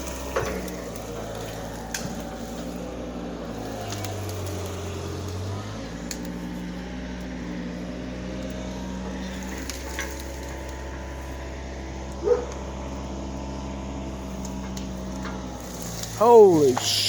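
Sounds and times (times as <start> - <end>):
engine running: 0.0 - 17.0
dog barking: 12.2 - 12.6.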